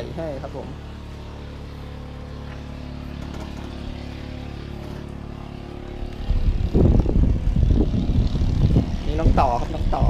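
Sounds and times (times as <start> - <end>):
motor humming: 0.0 - 10.0
wind buffeting microphone: 6.2 - 10.0.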